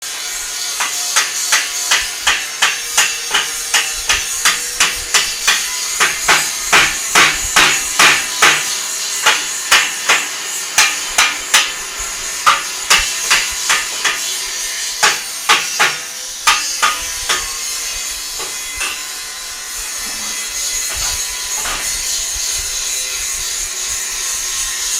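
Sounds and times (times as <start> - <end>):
hammer clanging on metal: 0.8 - 11.8, 12.4 - 14.3, 15.0 - 19.3, 20.0 - 22.1.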